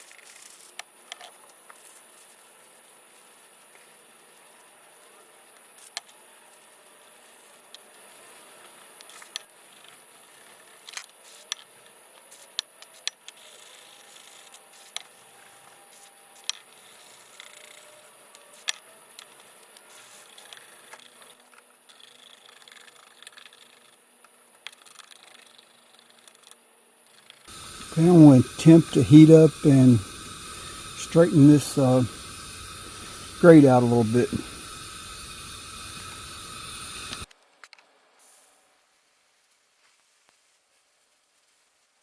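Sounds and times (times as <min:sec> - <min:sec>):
faint steady hiss: 0:25.7 - 0:42.0.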